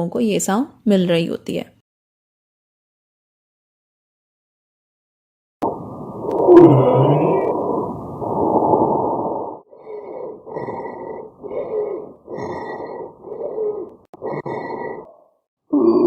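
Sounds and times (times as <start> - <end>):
loud rushing breath: 6.4 - 15.1
noisy lung breath sounds: 7.4 - 15.3.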